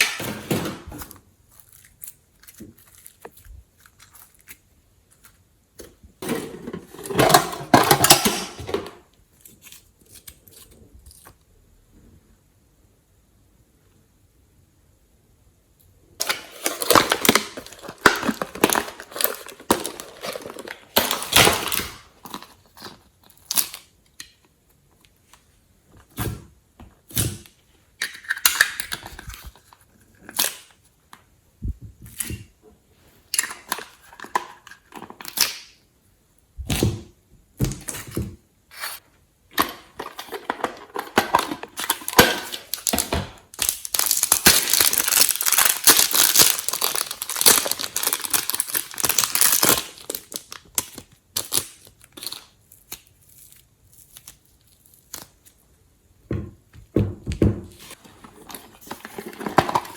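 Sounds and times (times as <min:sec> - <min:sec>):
slime squelching and crackling: 0:41.6 - 0:55.5.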